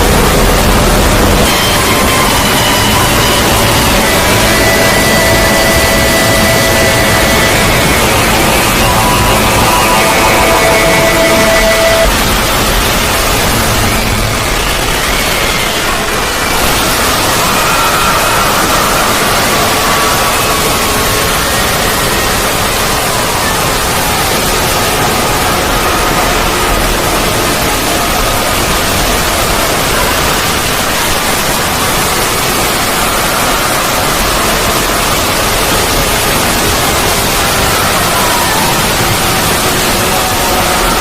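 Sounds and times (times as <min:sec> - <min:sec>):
faint wavering high tones: 0:00.0 - 0:14.9
steady static-like rushing noise: 0:00.0 - 0:41.0.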